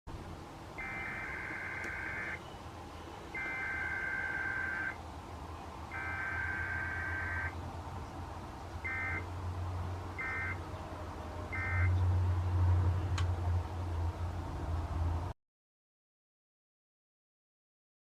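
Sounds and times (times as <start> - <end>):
faint static: 0.1 - 10.6
warbling data bursts: 0.8 - 2.4, 3.4 - 5.0, 5.9 - 7.6, 10.2 - 10.6
short data bursts: 0.8 - 2.7, 3.3 - 5.0, 5.9 - 7.6, 8.8 - 9.3, 10.2 - 10.6, 11.6 - 11.9.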